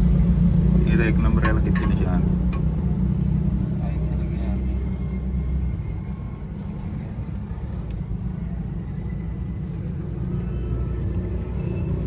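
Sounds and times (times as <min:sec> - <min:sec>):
car engine idling: 0:00.0 - 0:03.1.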